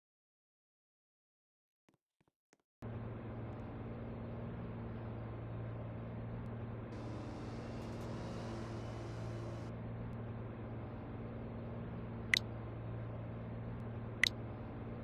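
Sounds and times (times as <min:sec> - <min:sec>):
vehicle engine humming: 0:02.8 - 0:15.0
high hiss: 0:07.0 - 0:09.7.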